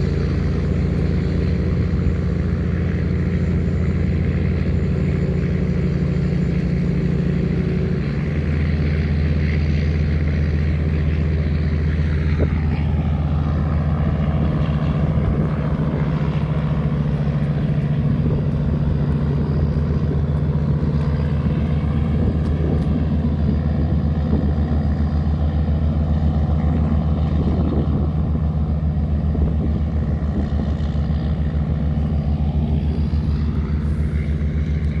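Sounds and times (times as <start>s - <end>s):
tugboat engine deep drone: 0.0s - 35.0s.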